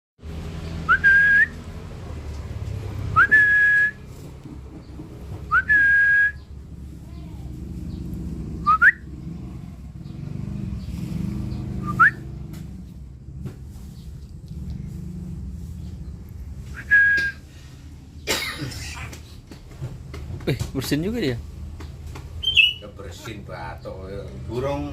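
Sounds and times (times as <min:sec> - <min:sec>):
parrot whistling: 0:00.9 - 0:01.6, 0:03.2 - 0:04.0, 0:08.6 - 0:09.1, 0:11.8 - 0:12.2, 0:16.7 - 0:17.4, 0:22.4 - 0:23.0.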